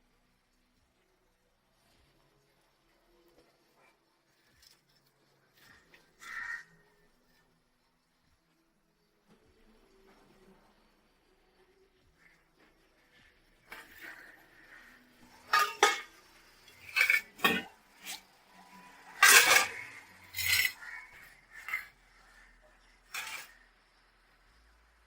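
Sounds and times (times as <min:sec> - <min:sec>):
pots cups and spoons clinking: 0:13.7 - 0:22.0, 0:23.1 - 0:23.6.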